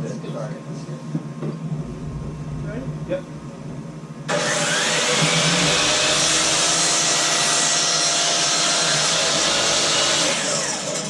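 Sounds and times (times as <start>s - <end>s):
power saw cutting wood: 4.3s - 11.0s.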